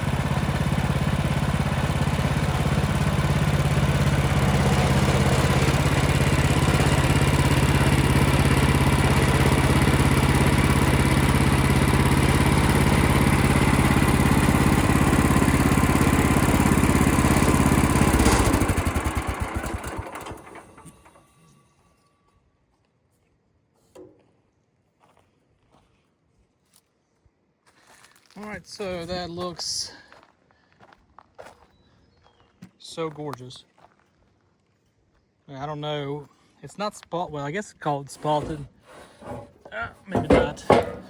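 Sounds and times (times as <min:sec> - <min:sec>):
sawmill engine running: 0:00.0 - 0:21.5, 0:37.3 - 0:41.0.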